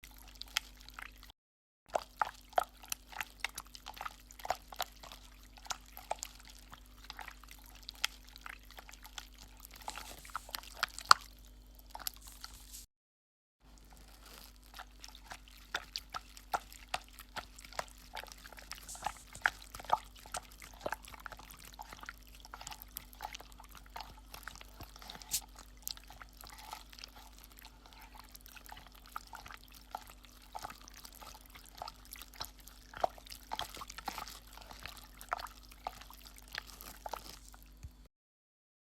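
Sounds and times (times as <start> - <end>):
wet drips and clicks: 28.5 - 38.0.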